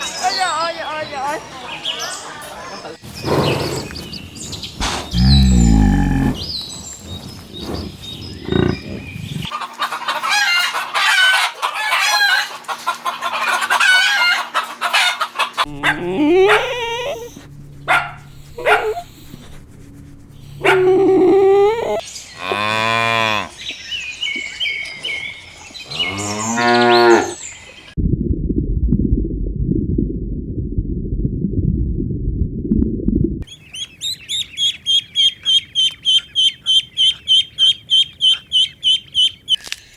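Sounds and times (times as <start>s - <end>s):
low rumbling noise: 4.8s - 6.6s, 27.9s - 33.5s
cows mooing: 5.1s - 6.5s, 15.6s - 17.4s, 20.6s - 23.7s, 25.9s - 27.4s
chickens clucking: 8.4s - 19.4s, 33.5s - 39.6s.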